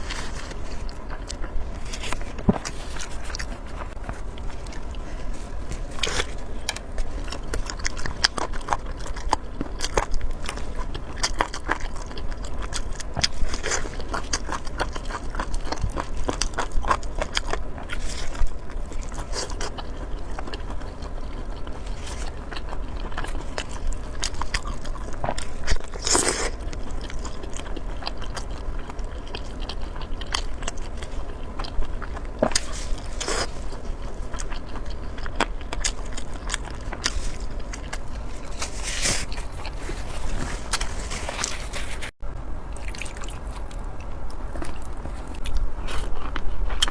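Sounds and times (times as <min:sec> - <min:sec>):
person chewing and biting: 0:00.0 - 0:42.1.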